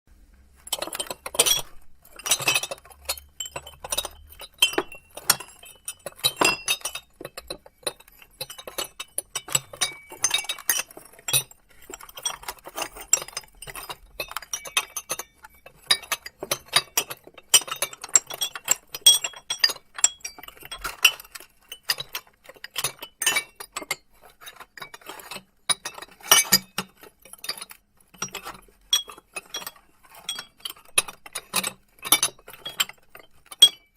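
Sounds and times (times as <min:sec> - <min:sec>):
glass plates clinking: 0:00.6 - 0:24.1.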